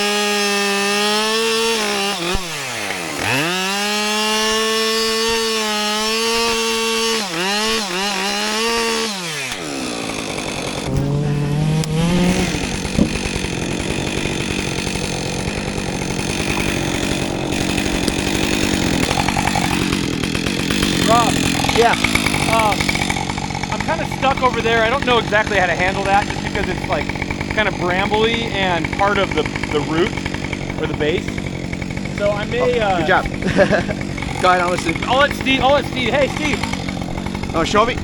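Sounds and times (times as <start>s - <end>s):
chainsaw cutting wood: 0.0s - 38.0s.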